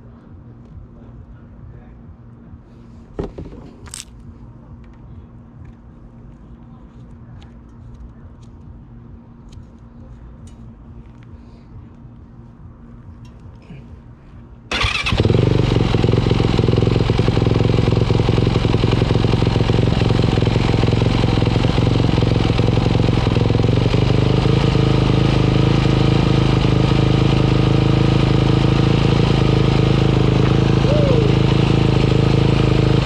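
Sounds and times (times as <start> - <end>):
motorcycle engine running: 14.7 - 33.0.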